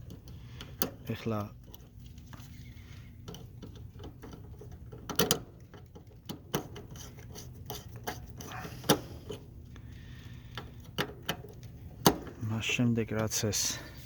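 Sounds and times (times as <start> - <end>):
clicks and rubbing: 1.6 - 9.8.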